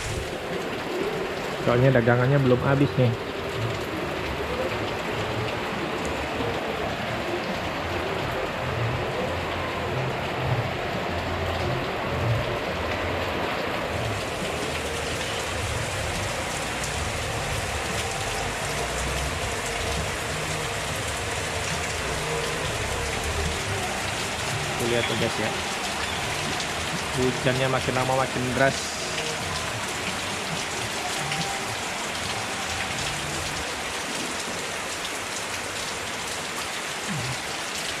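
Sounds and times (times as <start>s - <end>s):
heavy rain: 0.0s - 38.0s.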